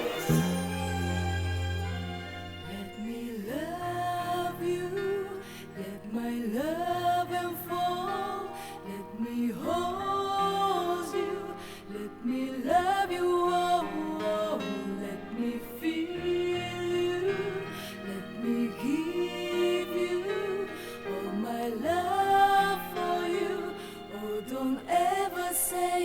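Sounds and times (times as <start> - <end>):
pop music playing: 0.0 - 2.0.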